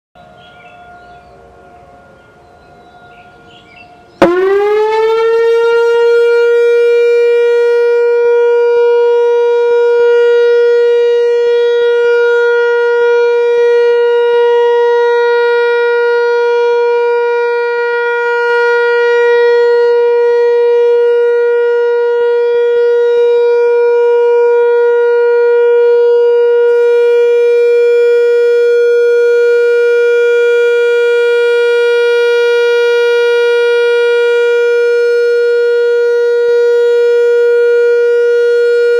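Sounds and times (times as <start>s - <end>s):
tornado warning siren: 0.2s - 38.9s.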